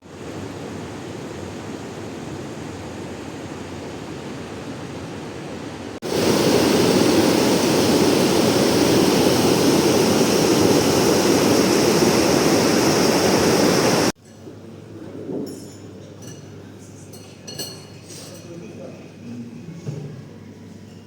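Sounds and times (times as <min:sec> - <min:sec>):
river water rushing: 0:06.0 - 0:14.2.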